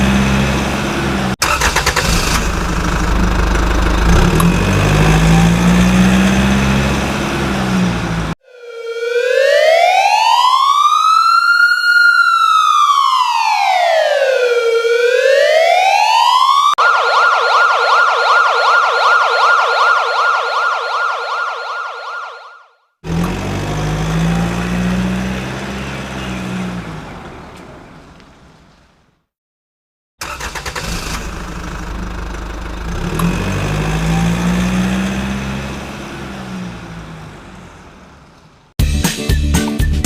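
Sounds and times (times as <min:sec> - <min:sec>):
vehicle engine running: 0:00.0 - 0:08.4, 0:23.1 - 0:28.0, 0:31.0 - 0:38.6
electronic siren wailing and warbling: 0:04.0 - 0:06.3, 0:08.4 - 0:22.8, 0:33.7 - 0:35.4.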